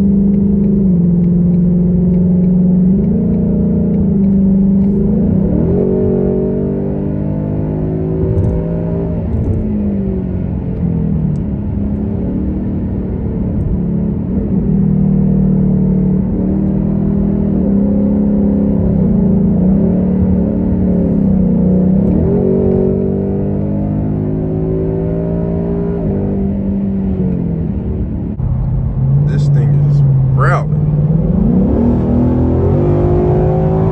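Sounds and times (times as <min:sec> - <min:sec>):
car exhaust note: 0:29.2 - 0:31.1.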